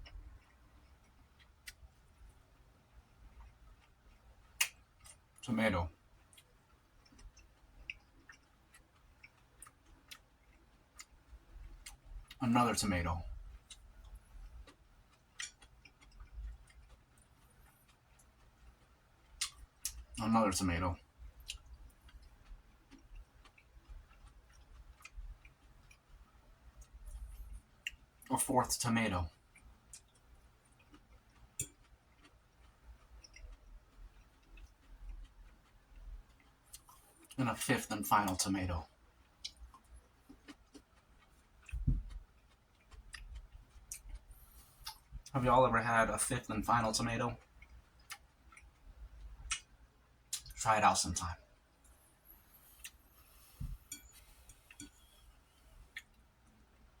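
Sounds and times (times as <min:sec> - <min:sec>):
low background hum: 0:00.0 - 0:57.0
wet chewing clicks: 0:06.2 - 0:12.4, 0:13.3 - 0:20.2, 0:21.4 - 0:28.3, 0:29.2 - 0:38.6, 0:39.2 - 0:45.4, 0:46.8 - 0:50.6.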